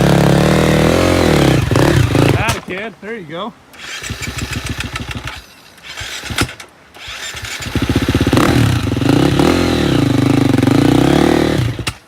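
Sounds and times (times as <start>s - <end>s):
dirt bike engine running: 0.0s - 2.6s, 3.8s - 5.4s, 6.0s - 12.0s.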